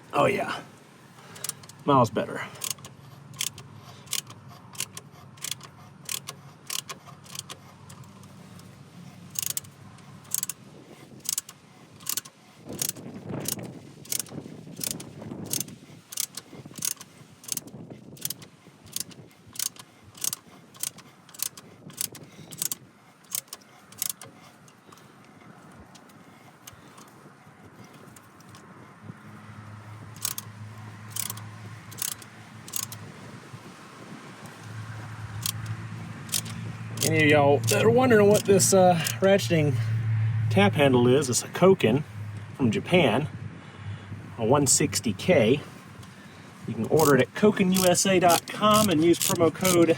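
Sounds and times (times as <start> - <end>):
ratcheting tap handle clicking: 1.2 - 1.8, 2.6 - 27.2, 27.8 - 28.7, 29.9 - 33.2, 34.4 - 39.5, 44.7 - 49.9
scraping handling noise: 2.5 - 33.4, 44.3 - 49.9.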